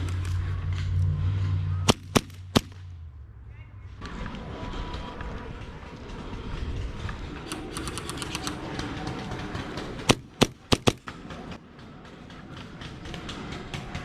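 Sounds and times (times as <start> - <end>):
low rumble of movement: 0.0 - 14.0
airsoft guns firing: 1.9 - 2.8, 10.1 - 11.1.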